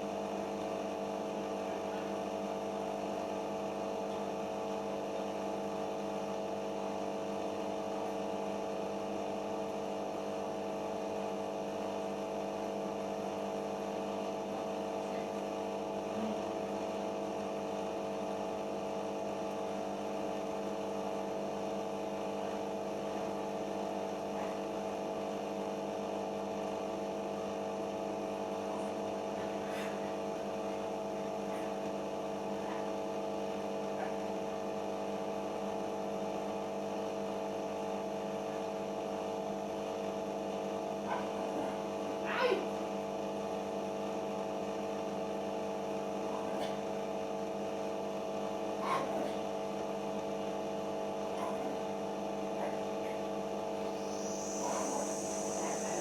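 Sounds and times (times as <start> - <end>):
washing machine spinning hum: 0.0 - 56.0.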